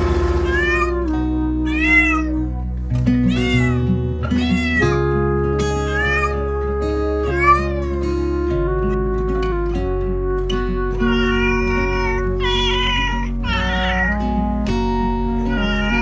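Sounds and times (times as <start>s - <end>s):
background music: 0.0s - 16.0s
cat meowing: 1.7s - 2.4s, 3.3s - 5.0s, 5.9s - 6.4s, 7.3s - 7.8s, 11.0s - 14.2s, 15.5s - 16.0s.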